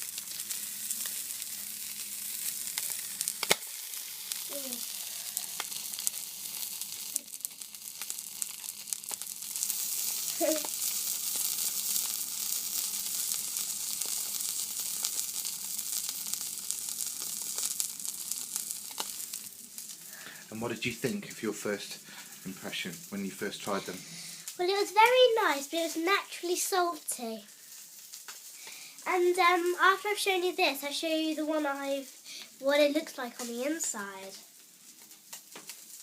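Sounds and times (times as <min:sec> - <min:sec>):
sharp crack: 0:00.0 - 0:25.4
food sizzling in a hot pan: 0:00.0 - 0:36.0.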